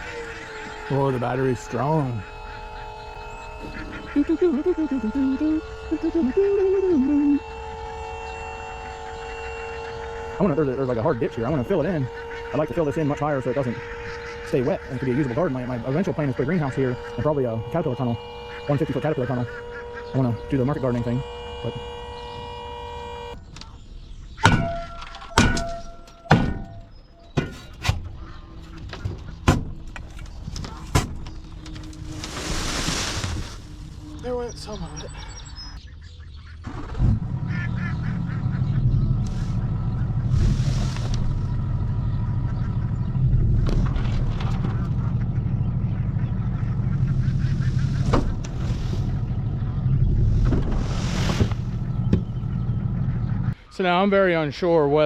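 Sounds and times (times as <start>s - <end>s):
steady hum: 0.0s - 23.4s, 24.0s - 53.6s
truck engine running: 0.0s - 55.0s
sharp knocks: 24.4s - 26.8s, 29.0s - 29.9s
sharp metallic clangs: 24.4s - 28.1s.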